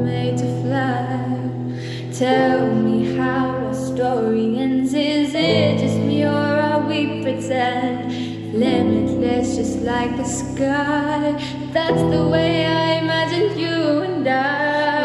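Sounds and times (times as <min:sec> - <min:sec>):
woman singing: 0:00.0 - 0:15.0.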